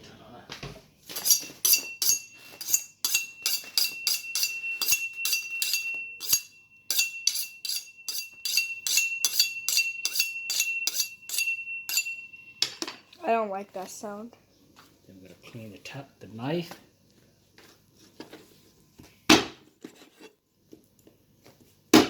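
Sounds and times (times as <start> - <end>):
knife sharpened on a steel: 1.1 - 12.2.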